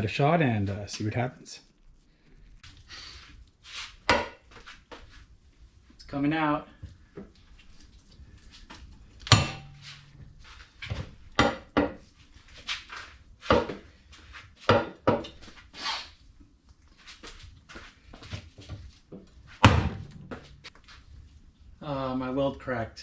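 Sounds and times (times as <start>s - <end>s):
metal knocks and clunks: 9.2s - 12.0s, 19.6s - 20.7s.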